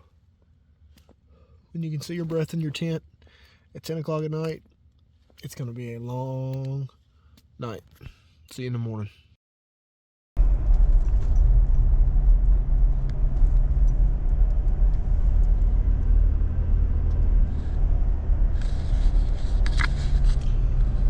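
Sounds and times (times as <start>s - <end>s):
vehicle engine and road noise: 10.4s - 21.0s.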